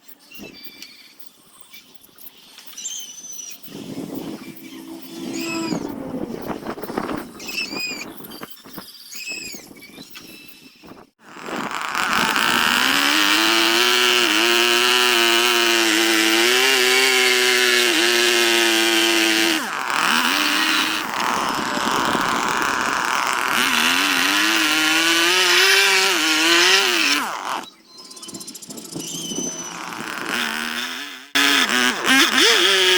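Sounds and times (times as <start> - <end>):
power tool carving wood: 11.2 - 27.7, 29.1 - 32.9.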